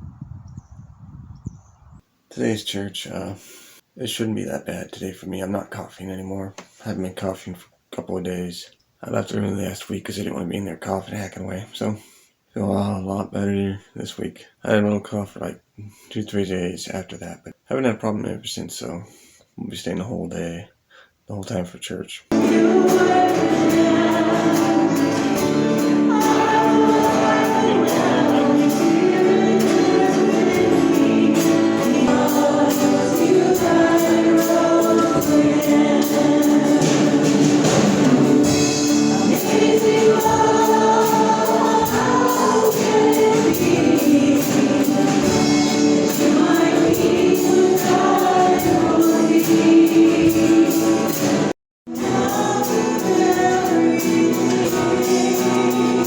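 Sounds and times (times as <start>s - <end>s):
group singing worship song: 22.3s - 56.0s
musical accompaniment with beat: 22.3s - 56.0s.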